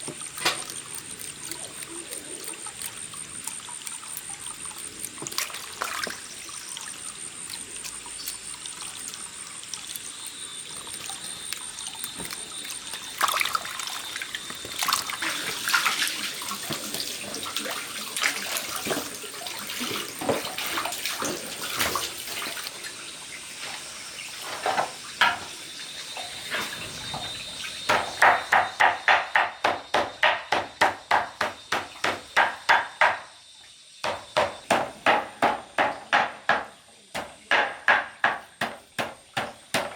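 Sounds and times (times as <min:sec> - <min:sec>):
water running and splashing: 0:00.0 - 0:29.2
chopping on a wooden board: 0:27.9 - 0:33.3, 0:34.0 - 0:39.9
scattered knocks: 0:27.9 - 0:33.3.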